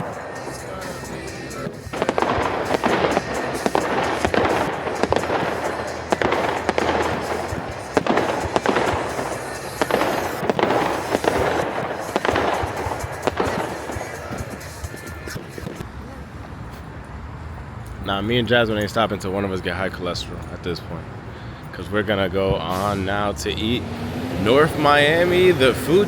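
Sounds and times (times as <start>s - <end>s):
fireworks bangs and crackling: 0.0s - 15.9s, 22.4s - 23.6s, 24.4s - 26.0s
music playing: 0.0s - 15.9s, 22.7s - 26.0s.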